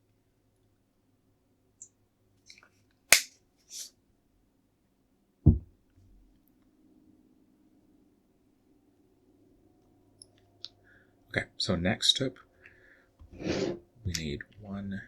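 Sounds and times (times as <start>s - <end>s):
short hiss: 3.1s - 3.9s, 13.4s - 13.8s
bottle set down on table: 5.5s - 5.7s.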